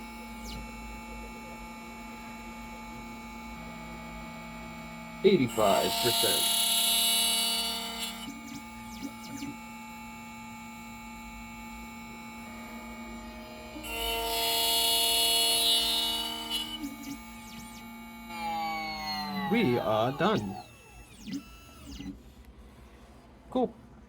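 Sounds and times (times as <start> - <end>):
key cutting machine whine: 0.0 - 23.0
machine running quietly: 0.0 - 24.0.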